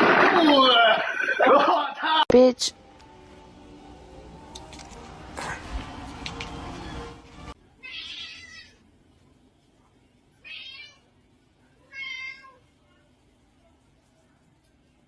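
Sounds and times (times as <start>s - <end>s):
cat meowing: 7.8s - 8.8s.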